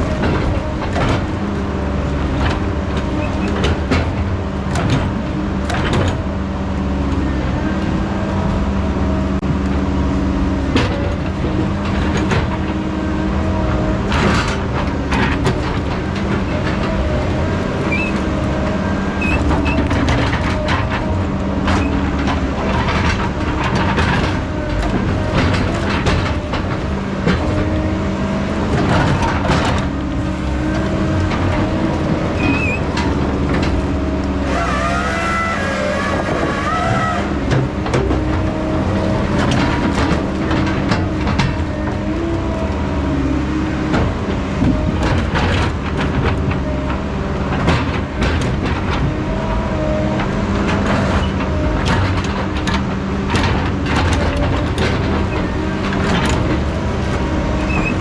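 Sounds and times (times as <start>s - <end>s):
metal clanks and knocks: 0.0s - 7.9s, 10.6s - 58.0s
heavy diesel machinery running: 0.0s - 58.0s
high squealing whine: 17.8s - 20.8s, 32.3s - 33.1s, 34.3s - 37.6s.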